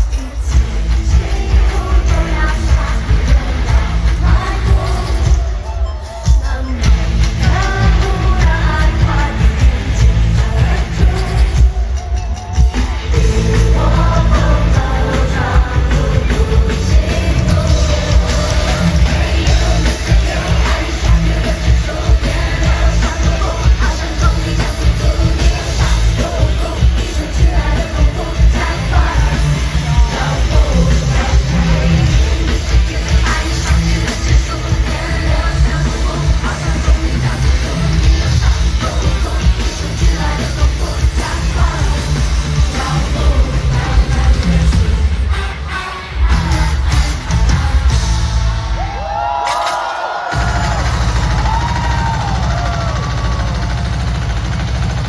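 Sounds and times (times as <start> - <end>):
woman singing: 0.0 - 11.8, 12.7 - 48.0
amplified band with heavy bass: 0.0 - 55.0
people yelling: 48.6 - 54.6.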